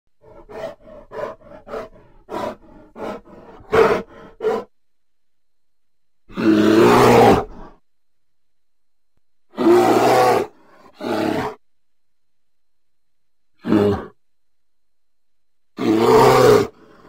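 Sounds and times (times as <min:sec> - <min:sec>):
bear grunting: 0:00.2 - 0:04.7, 0:09.5 - 0:11.6
bear roaring: 0:00.2 - 0:04.7, 0:06.3 - 0:07.8, 0:09.5 - 0:11.6, 0:13.6 - 0:14.2, 0:15.8 - 0:17.0.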